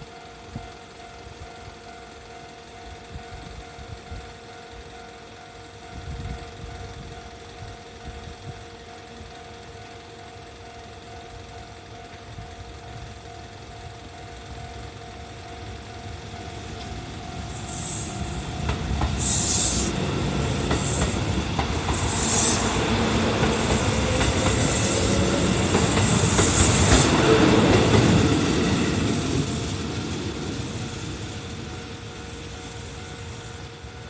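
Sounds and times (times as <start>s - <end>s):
train wheels clattering: 15.5s - 33.5s.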